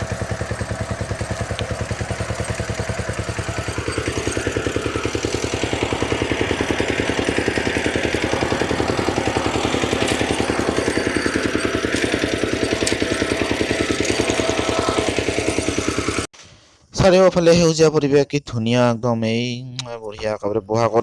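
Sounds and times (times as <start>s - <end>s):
tractor engine running under load: 0.0s - 16.3s.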